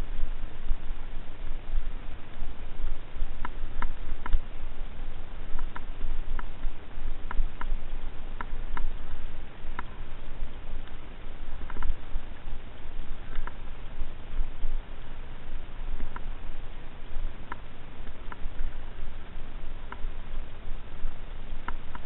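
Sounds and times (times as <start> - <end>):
wind on microphone: 0.0 - 22.0
light clicks from bike: 3.4 - 4.4, 5.5 - 7.8, 11.6 - 12.0, 13.3 - 13.6.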